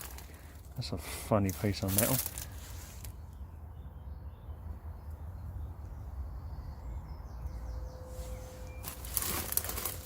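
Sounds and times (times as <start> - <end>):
faint bird chirps: 3.1 - 9.2.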